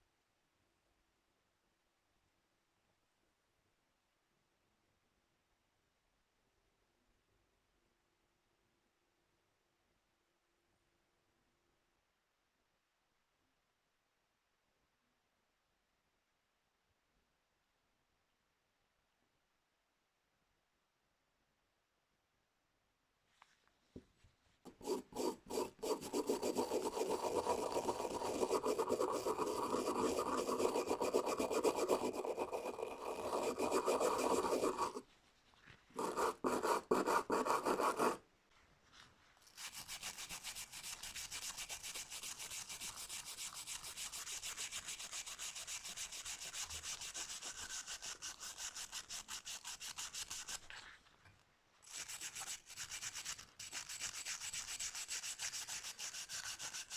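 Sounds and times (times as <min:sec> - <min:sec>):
hand sanding rubbing strokes: 0:24.7 - 0:35.2, 0:36.0 - 0:38.2, 0:39.5 - 0:50.7, 0:51.8 - 0:56.9.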